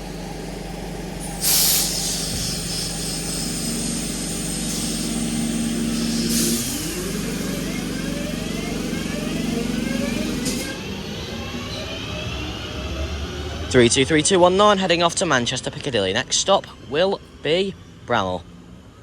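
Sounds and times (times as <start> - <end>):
traction motor whine: 0.0 - 17.4
low train hum: 0.0 - 19.0
air release hiss: 1.2 - 7.1.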